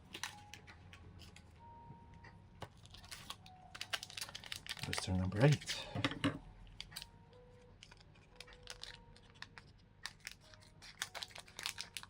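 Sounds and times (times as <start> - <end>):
foil pack crinkling: 2.7 - 5.9, 6.7 - 12.0.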